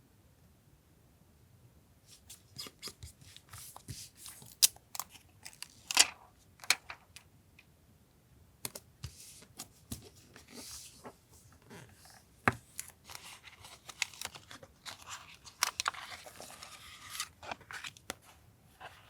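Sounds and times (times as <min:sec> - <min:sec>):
paper rustling: 0:09.0 - 0:19.0.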